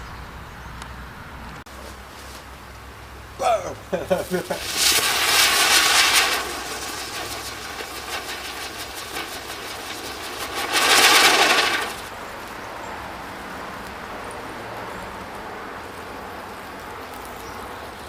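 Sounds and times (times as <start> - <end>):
firework crackling and hissing: 3.4 - 12.6.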